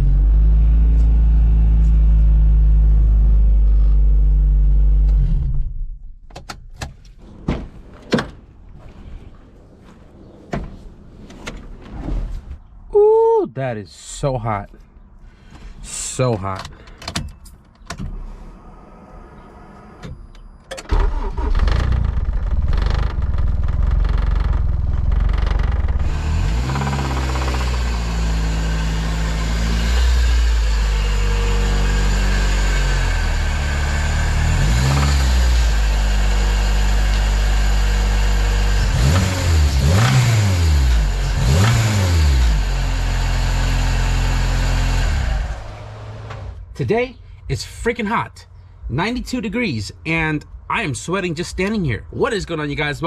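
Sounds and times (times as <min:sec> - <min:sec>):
car engine idling and revving: 0:00.0 - 0:06.0, 0:18.4 - 0:46.7.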